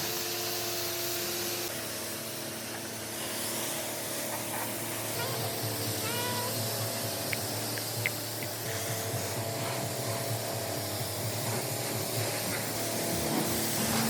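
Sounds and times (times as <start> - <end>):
machine hum: 0.0 - 14.0.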